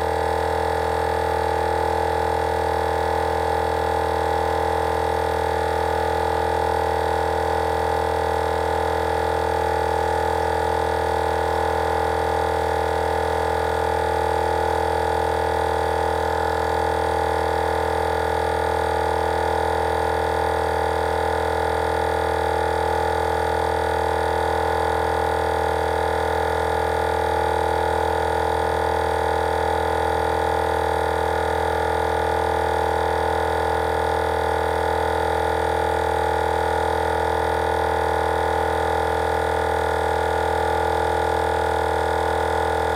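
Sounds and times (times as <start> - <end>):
air compressor humming: 19.3 - 42.9.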